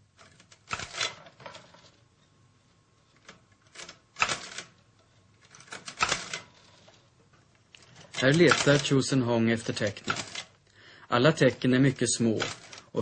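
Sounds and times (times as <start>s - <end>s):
typewriter mechanical clacks: 0.2s - 1.6s, 3.2s - 4.8s, 5.4s - 6.8s, 7.8s - 10.5s, 11.9s - 13.0s.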